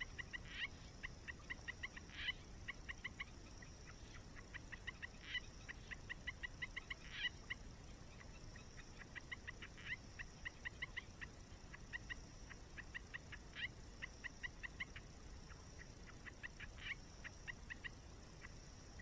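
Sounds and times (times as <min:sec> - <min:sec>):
steady high hiss: 0:00.0 - 0:19.0.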